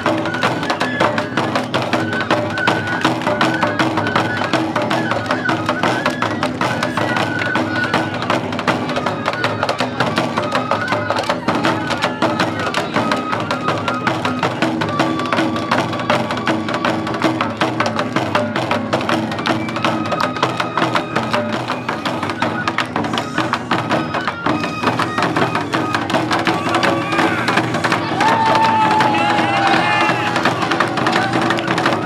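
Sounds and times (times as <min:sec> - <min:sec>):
bamboo flute melody: 0:00.0 - 0:32.0
rapid taiko drumming: 0:00.0 - 0:32.0.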